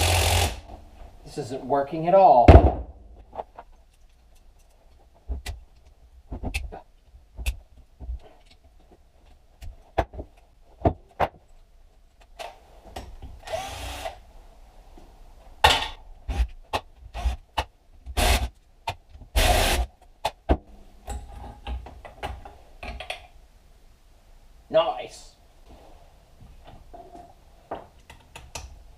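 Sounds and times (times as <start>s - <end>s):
power tool bursts: 0.0s - 0.6s.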